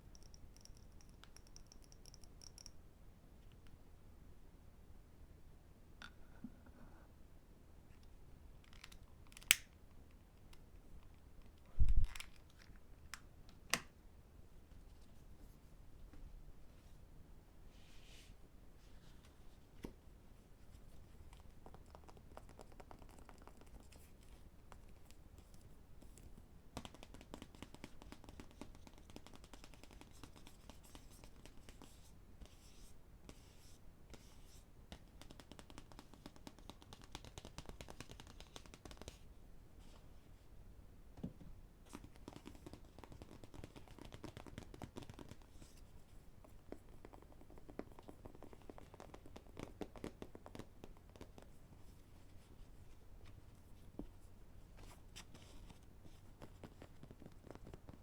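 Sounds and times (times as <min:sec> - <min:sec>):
fingers tapping on books: 0:21.6 - 0:23.8, 0:26.8 - 0:31.9, 0:34.9 - 0:39.2, 0:41.2 - 0:45.8, 0:46.4 - 0:51.5.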